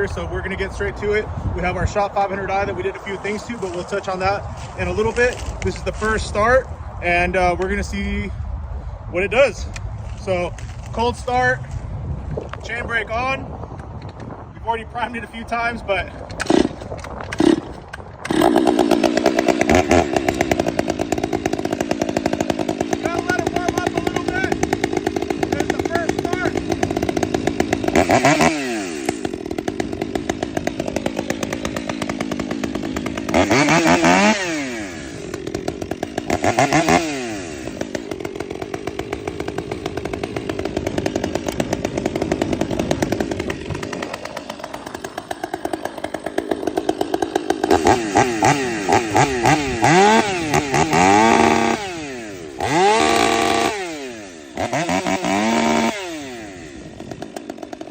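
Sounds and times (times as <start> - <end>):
chainsaw idling and revving: 0.0 - 8.4, 9.5 - 13.4, 14.7 - 57.9.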